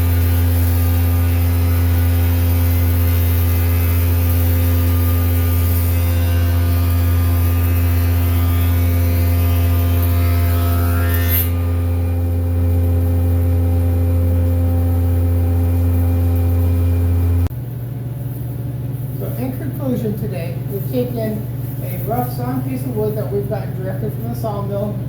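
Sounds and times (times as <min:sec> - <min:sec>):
planer cutting wood: 0:00.0 - 0:17.5
planer humming: 0:00.0 - 0:17.5.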